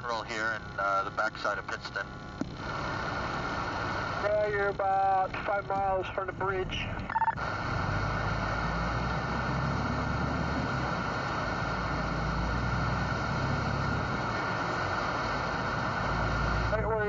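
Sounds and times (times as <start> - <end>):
radio static hiss: 0.0 - 17.0
truck engine rumble: 0.0 - 17.0.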